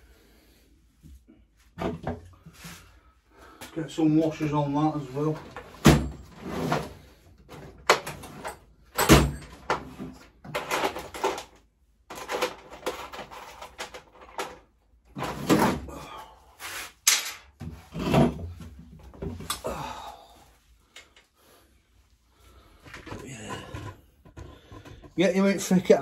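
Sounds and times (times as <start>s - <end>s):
metal parts knocking and clinking: 7.8s - 14.7s.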